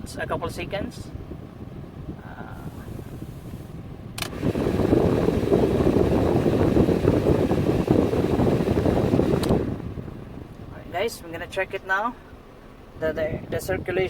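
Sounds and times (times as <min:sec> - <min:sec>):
air conditioning blower rushing: 0:00.0 - 0:14.0
click: 0:09.4 - 0:09.6.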